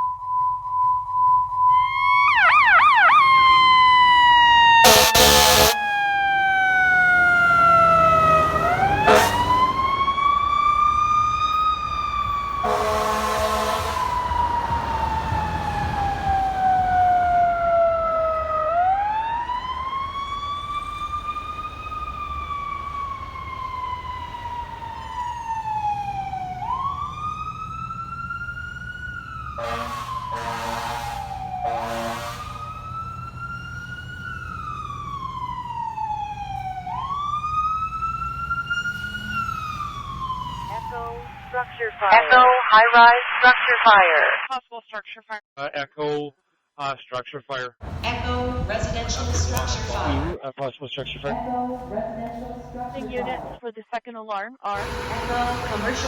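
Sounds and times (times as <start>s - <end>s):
fire engine siren wailing: 1.2s - 42.4s, 54.8s - 56.0s
air horn blasts: 4.8s - 6.0s, 8.9s - 9.7s, 12.6s - 14.3s, 29.6s - 32.7s, 54.8s - 56.0s.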